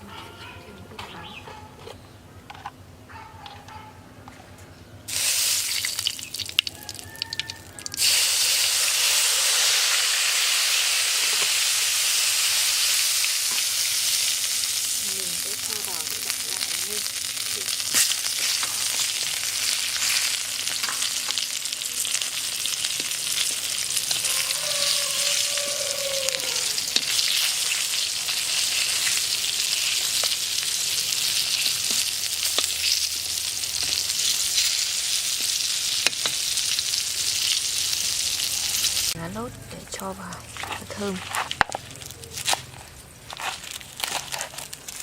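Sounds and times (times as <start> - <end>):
deep-frying oil sizzling: 5.1 - 39.2.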